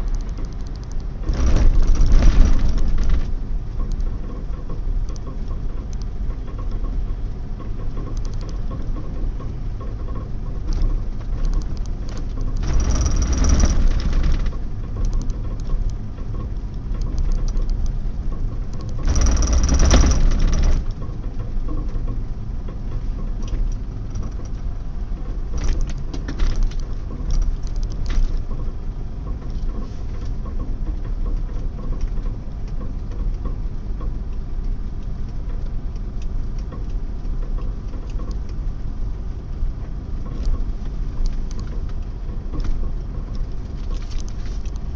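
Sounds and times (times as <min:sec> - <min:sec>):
pickup engine running: 0:00.0 - 0:29.4
abnormal engine noise: 0:00.0 - 0:44.9.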